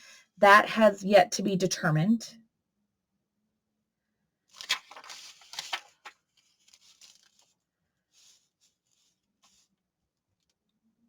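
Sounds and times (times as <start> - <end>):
paper rustling: 4.5 - 9.7.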